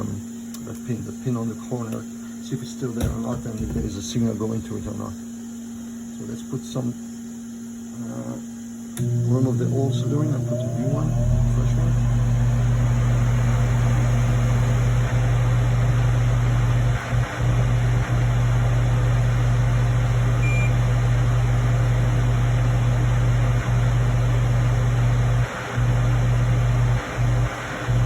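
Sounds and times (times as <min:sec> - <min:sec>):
steady low hum with hiss: 0:00.0 - 0:28.0.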